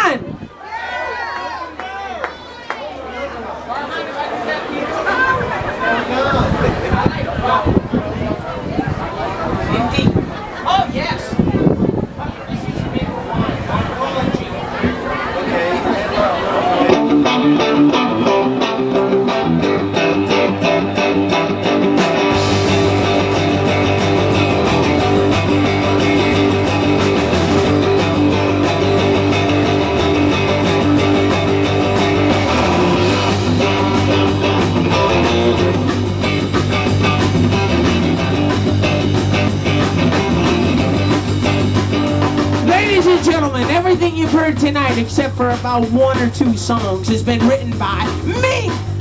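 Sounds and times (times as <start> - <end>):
live rock band playing: 16.8 - 49.0
strummed electric guitar: 16.8 - 49.0
low bass line: 17.0 - 49.0.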